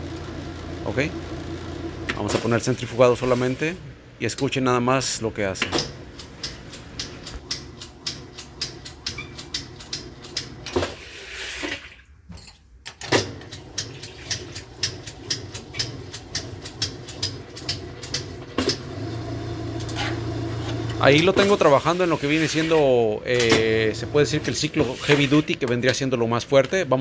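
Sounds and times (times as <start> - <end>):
washing machine motor humming: 0.0 - 3.8, 5.9 - 10.8, 13.3 - 27.0
rapid repeated motor clicks: 6.1 - 10.6, 13.4 - 18.8.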